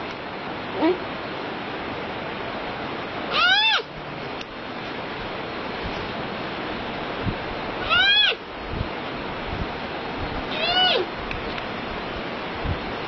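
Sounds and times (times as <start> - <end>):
panda crying: 3.3 - 3.9, 7.8 - 8.4, 10.5 - 11.1.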